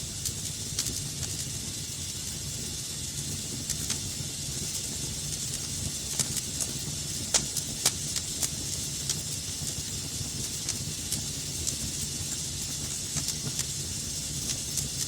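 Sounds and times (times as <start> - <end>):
fire crackling and popping: 0.0 - 15.0
fire hissing and rumbling: 0.0 - 15.0.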